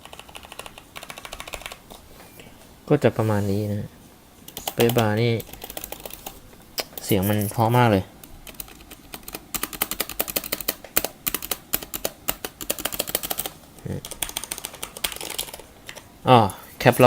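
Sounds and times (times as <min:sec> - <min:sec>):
mechanical keyboard typing: 0:00.0 - 0:01.8, 0:04.5 - 0:07.5, 0:08.4 - 0:16.1.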